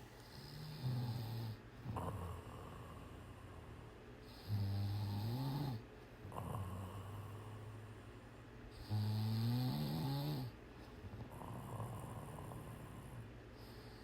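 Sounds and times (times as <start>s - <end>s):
person snoring: 8.8s - 10.5s.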